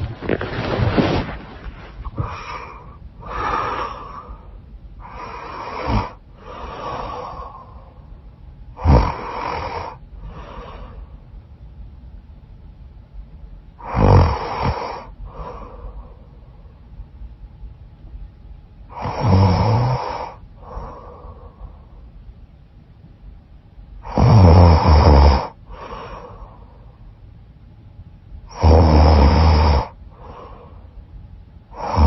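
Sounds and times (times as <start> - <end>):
woman snoring: 2.0 - 4.4, 5.0 - 7.8, 8.8 - 11.0, 13.8 - 15.8, 18.9 - 21.3, 24.0 - 26.4, 28.5 - 30.8, 31.8 - 32.0.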